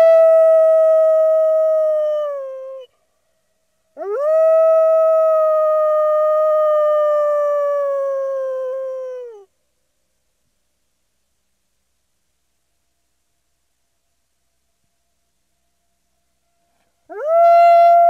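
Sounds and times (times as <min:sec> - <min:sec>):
wolf howling: 0:04.0 - 0:09.5, 0:17.1 - 0:18.0.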